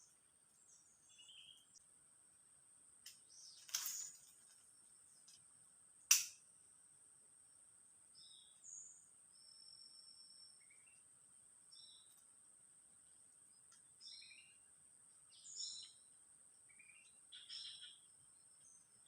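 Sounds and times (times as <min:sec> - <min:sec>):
bird chirps: 0:00.0 - 0:01.8, 0:11.7 - 0:12.2, 0:13.8 - 0:14.7, 0:15.3 - 0:16.1, 0:16.7 - 0:19.0
sharp click: 0:06.1 - 0:06.4.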